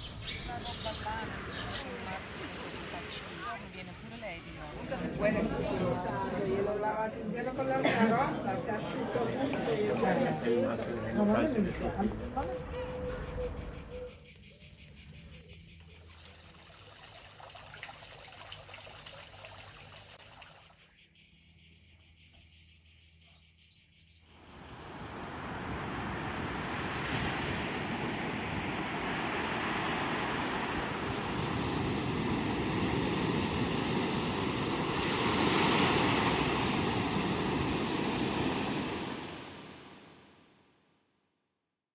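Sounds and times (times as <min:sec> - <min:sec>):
insects chirping: 0:00.0 - 0:01.9, 0:04.8 - 0:40.1
sea waves rushing on shore: 0:01.0 - 0:13.8, 0:24.6 - 0:40.4.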